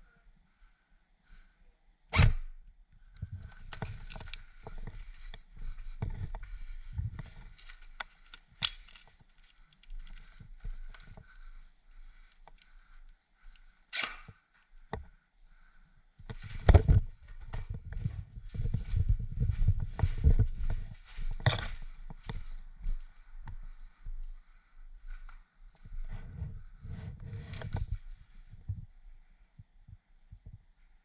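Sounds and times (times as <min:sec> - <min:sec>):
clothing and gear rustling: 0:03.3 - 0:13.8, 0:16.3 - 0:23.8
footsteps: 0:03.4 - 0:13.6, 0:16.2 - 0:28.1.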